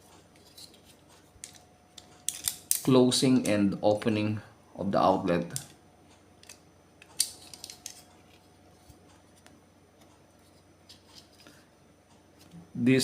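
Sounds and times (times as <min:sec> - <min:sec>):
plastic parts clicking: 0:01.4 - 0:02.9.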